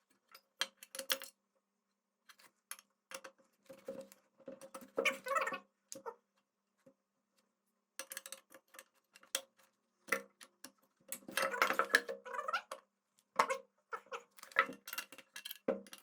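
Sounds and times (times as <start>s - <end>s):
small metal parts clicking: 0.3s - 1.3s.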